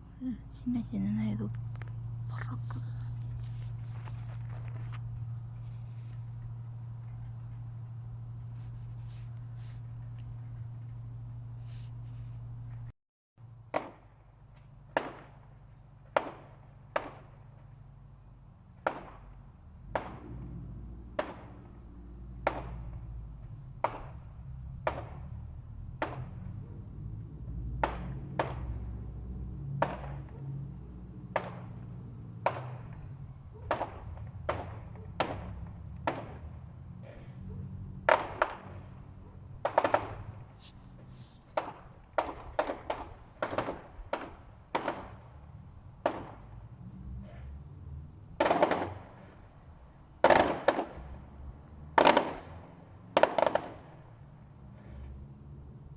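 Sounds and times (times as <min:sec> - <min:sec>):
distant fireworks bangs: 0:13.6 - 0:17.9, 0:18.8 - 0:26.6, 0:27.8 - 0:29.2, 0:29.8 - 0:37.4, 0:38.0 - 0:47.6, 0:48.4 - 0:55.2.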